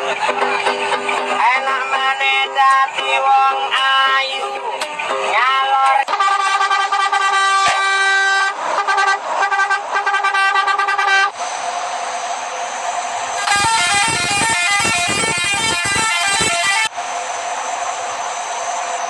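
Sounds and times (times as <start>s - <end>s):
vehicle horn sounding: 6.1s - 11.4s, 13.4s - 16.9s.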